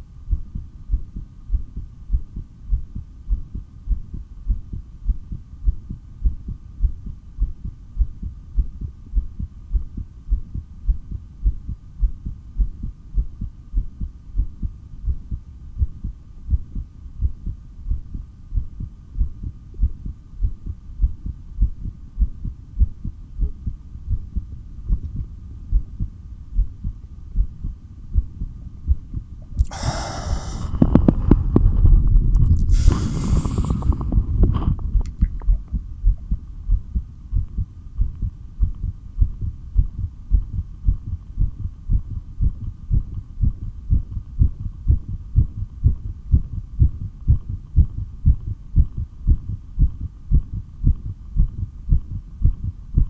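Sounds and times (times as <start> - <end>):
faint constant hum: 0.0 - 53.0
heartbeat through stethoscope: 0.0 - 53.0
rush of air breath: 29.6 - 35.1.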